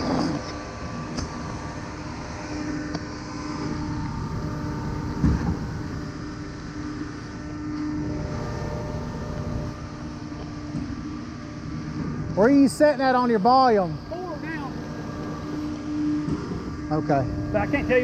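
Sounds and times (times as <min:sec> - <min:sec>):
hum: 0:00.0 - 0:18.0.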